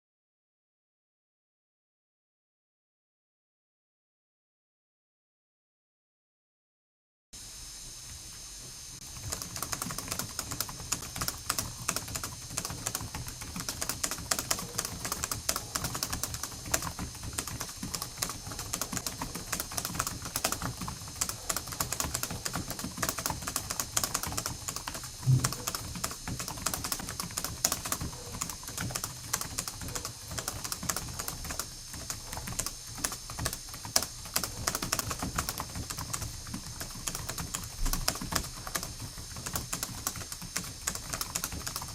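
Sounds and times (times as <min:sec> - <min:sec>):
fast typing on keyboard: 0:09.0 - 0:41.9
heavy low thump: 0:25.2 - 0:25.6.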